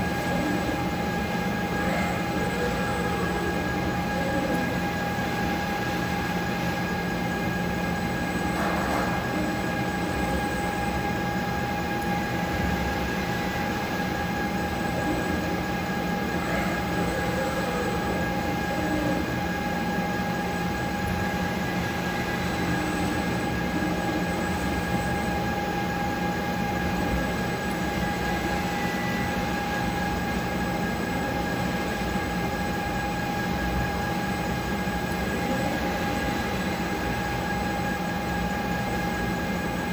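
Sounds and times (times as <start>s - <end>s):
machinery running with whine: 0.0s - 39.9s.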